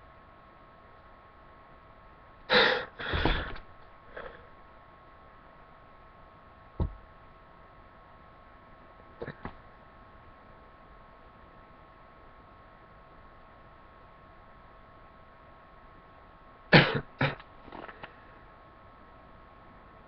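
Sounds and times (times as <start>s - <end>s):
electrical whine: 0.0s - 20.0s.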